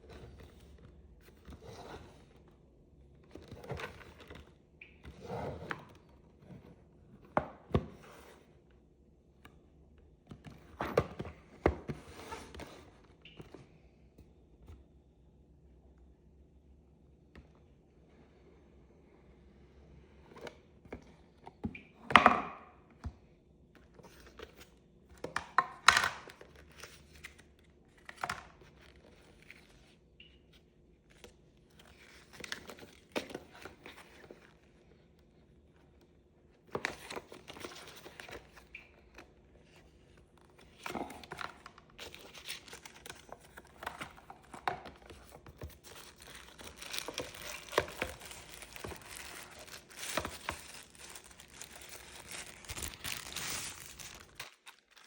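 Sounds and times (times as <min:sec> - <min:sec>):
packaging tearing and crinkling: 0:45.8 - 0:55.0.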